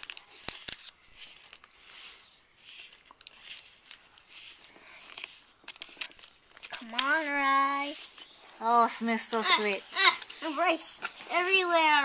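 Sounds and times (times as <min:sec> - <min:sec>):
scratchy stirring and scraping: 0:01.2 - 0:12.0.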